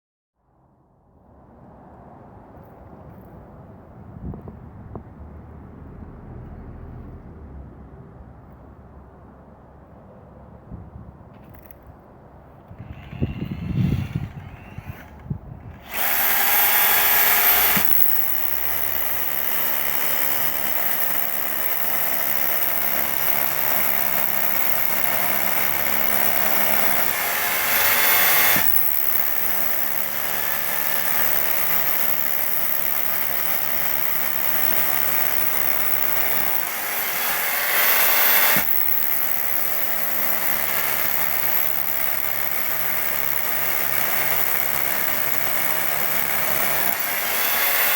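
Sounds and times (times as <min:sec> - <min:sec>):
rotary hammer drilling: 0:12.6 - 0:47.9.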